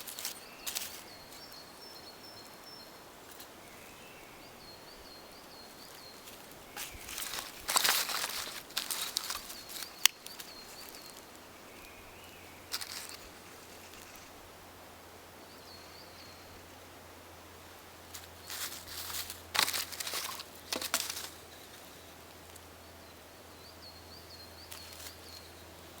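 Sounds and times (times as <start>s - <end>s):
rustling and crackling handling: 0.0s - 1.6s, 5.5s - 12.0s, 12.7s - 14.4s, 18.1s - 22.6s
small birds chirping: 0.0s - 16.8s, 17.4s - 26.0s.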